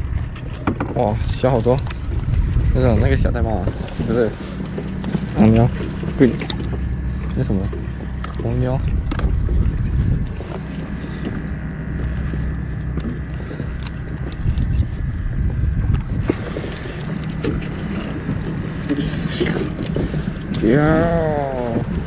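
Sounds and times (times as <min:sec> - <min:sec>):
boat engine humming: 0:00.0 - 0:22.0
wind gusting on microphone: 0:01.0 - 0:04.4, 0:08.5 - 0:10.8, 0:12.9 - 0:22.0.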